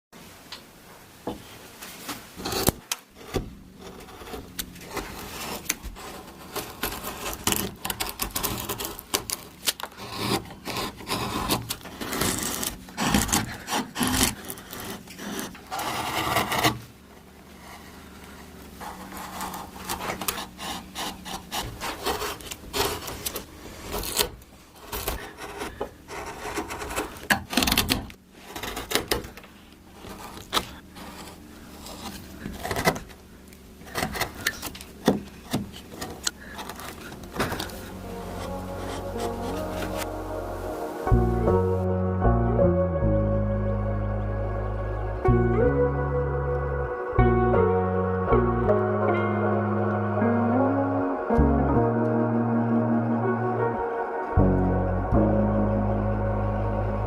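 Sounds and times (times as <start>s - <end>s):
hand tools scraping wood: 2.4s - 40.3s.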